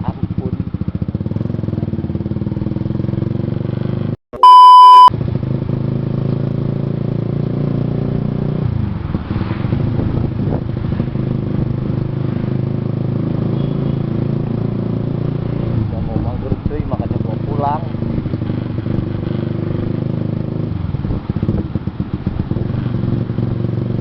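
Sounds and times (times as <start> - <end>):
motorcycle engine running: 0.0 - 4.1
electronic censor beep: 4.4 - 5.1.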